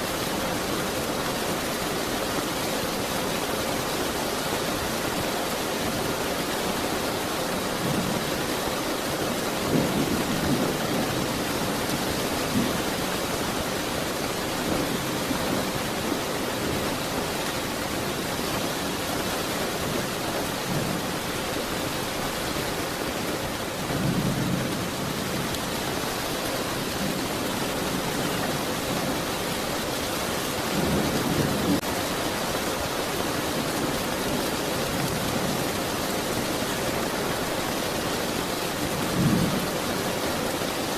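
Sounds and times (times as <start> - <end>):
heavy rain falling: 0.0 - 40.9
distant thunder rumbles: 7.8 - 17.2.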